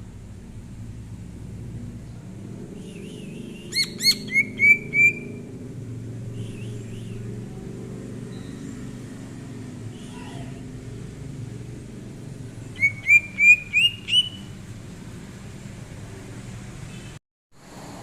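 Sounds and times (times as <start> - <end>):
low background hum: 0.0 - 16.9
faint bird calls: 2.8 - 5.4, 6.3 - 7.3, 10.0 - 10.7, 12.7 - 14.6
bird giving short rising notes: 2.9 - 5.4, 12.7 - 14.6.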